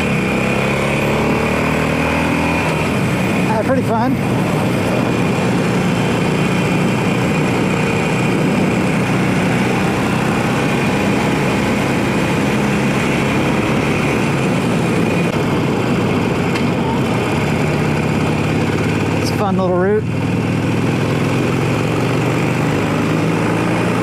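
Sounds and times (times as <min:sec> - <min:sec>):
motorcycle engine running: 0:00.0 - 0:24.0
wind noise: 0:02.0 - 0:19.0.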